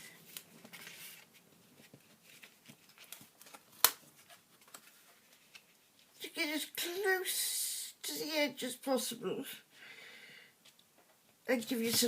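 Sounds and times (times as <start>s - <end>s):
paper rustling: 0.1s - 6.2s.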